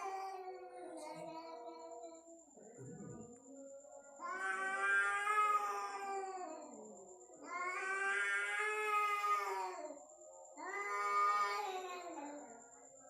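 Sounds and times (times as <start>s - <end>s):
cat caterwauling: 4.2s - 6.7s, 7.4s - 9.8s.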